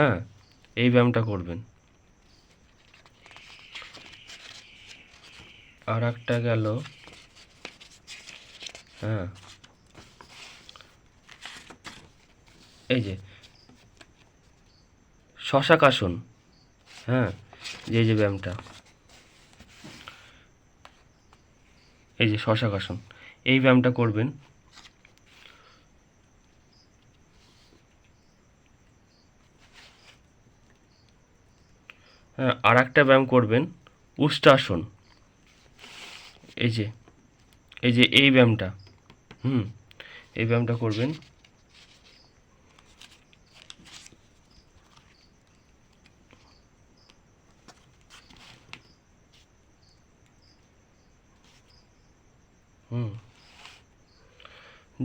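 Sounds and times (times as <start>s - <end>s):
faint cricket chirping: 0.0s - 55.0s
soft hissy sounds: 0.4s - 22.2s, 34.3s - 37.6s.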